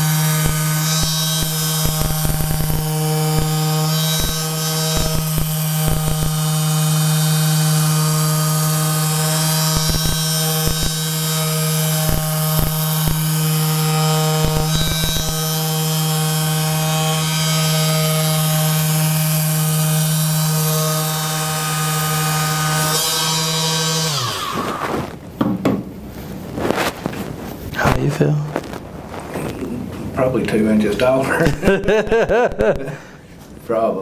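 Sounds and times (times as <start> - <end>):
small motor humming: 0.0 - 25.2.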